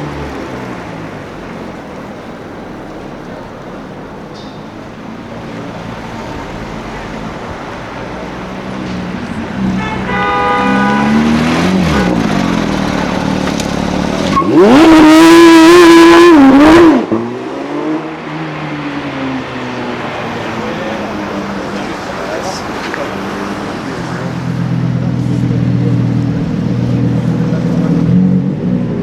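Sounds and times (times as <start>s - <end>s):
passing street traffic: 0.0s - 29.0s
car engine revving hard: 9.5s - 18.6s.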